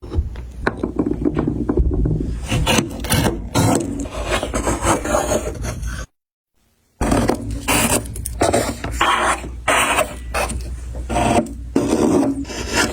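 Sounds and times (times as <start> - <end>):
hand saw rasping on wood: 7.1 - 12.9.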